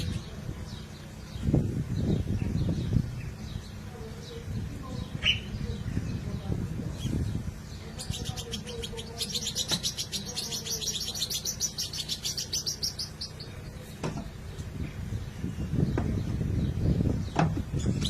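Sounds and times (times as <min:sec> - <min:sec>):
bird chirping rapidly: 0:00.0 - 0:06.2, 0:06.8 - 0:14.6
low rumbling noise: 0:00.0 - 0:18.0.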